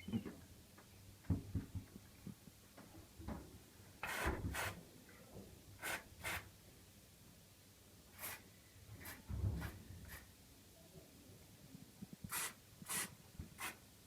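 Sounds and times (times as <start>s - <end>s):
aerosol spray hissing: 12.3s - 13.8s.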